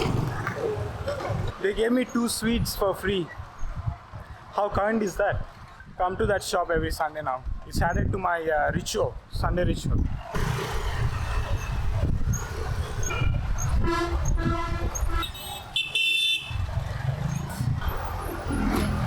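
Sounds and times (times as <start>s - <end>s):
road traffic: 0.0s - 6.0s, 9.9s - 19.0s
vehicle horns tooting: 13.0s - 16.7s.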